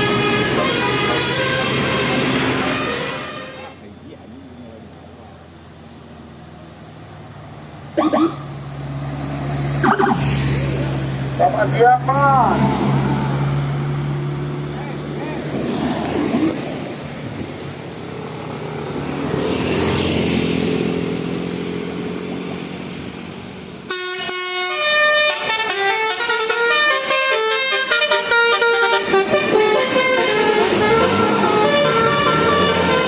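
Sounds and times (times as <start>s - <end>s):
bus musical horn tune: 0.0s - 3.8s, 23.9s - 33.0s
large vehicle engine passing: 5.5s - 23.8s, 29.0s - 33.0s.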